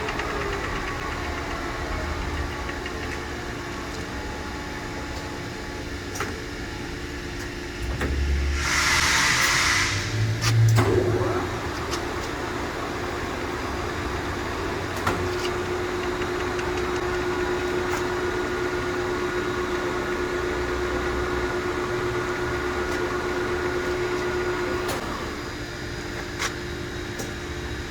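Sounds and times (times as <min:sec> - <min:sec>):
sharp mechanical clicks: 0:00.0 - 0:03.3
lathe running with gear whine: 0:00.0 - 0:27.9.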